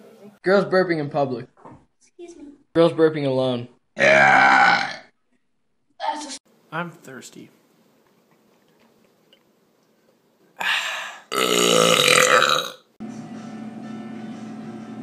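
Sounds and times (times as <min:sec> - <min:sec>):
person burping: 0:04.0 - 0:05.1, 0:10.6 - 0:12.9.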